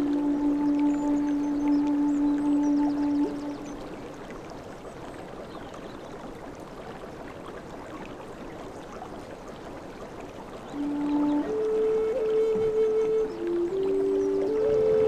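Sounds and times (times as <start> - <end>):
low flute note: 0.0 - 3.9, 10.8 - 15.0
sea water rushing: 0.0 - 5.5, 9.1 - 15.0.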